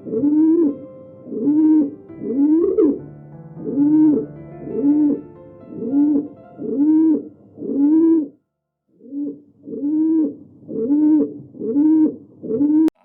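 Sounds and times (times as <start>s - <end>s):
animal calling: 9.0s - 12.9s.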